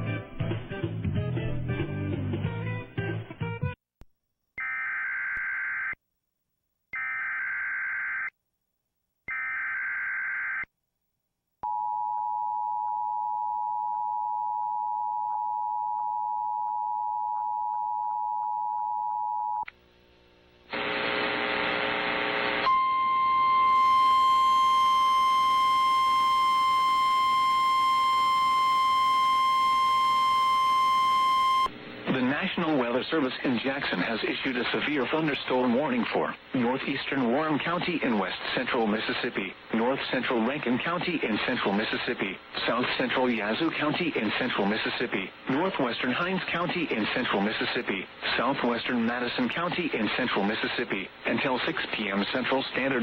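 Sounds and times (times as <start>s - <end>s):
static burst: 20.7s - 22.7s
two-tone alert signal: 22.7s - 31.7s.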